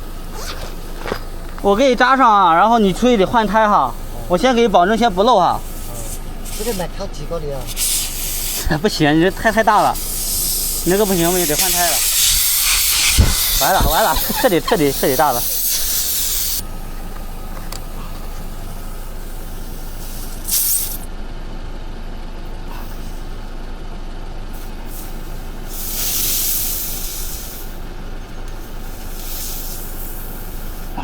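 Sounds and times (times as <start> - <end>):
air hissing out of tyre: 0.0 - 21.1, 22.5 - 23.7, 24.5 - 31.0.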